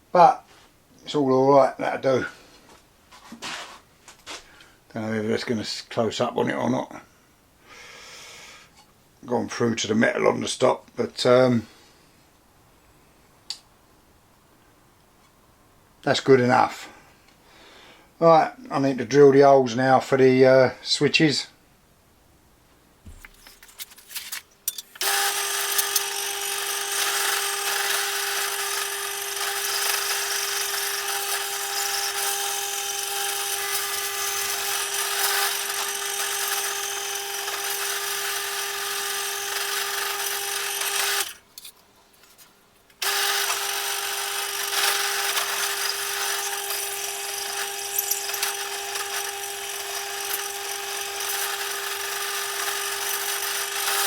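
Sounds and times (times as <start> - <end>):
drill clicks: 24.7 - 41.7, 42.9 - 54.0
electric drill whining: 25.0 - 41.4, 43.0 - 54.0.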